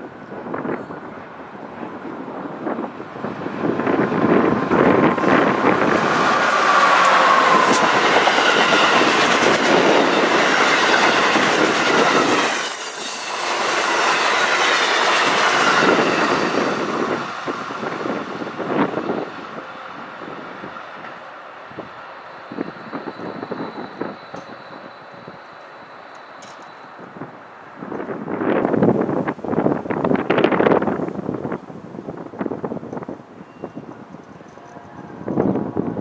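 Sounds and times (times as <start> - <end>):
loud rumbling rushing noise: 3.2 - 12.4
faint high squealing tones: 22.3 - 27.1.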